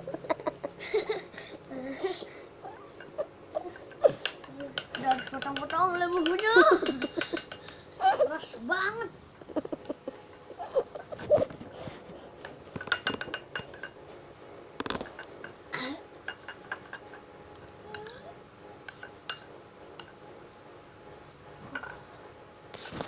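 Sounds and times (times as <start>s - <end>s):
utensil clinking against a bowl: 2.9s - 7.8s, 12.4s - 14.0s, 16.2s - 20.2s.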